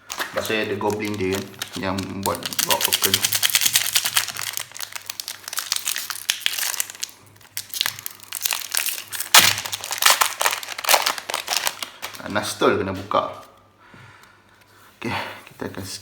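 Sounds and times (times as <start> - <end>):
foil wrapper crinkling: 0.0 - 12.4.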